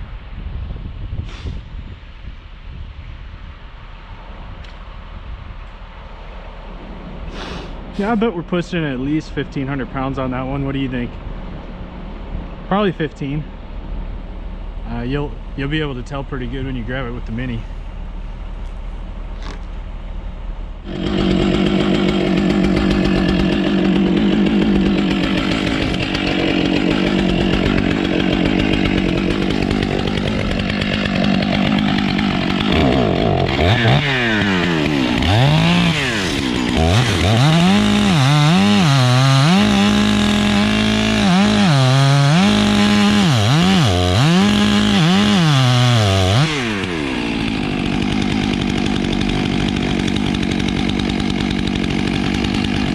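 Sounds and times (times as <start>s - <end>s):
chainsaw cutting wood: 20.8s - 52.9s.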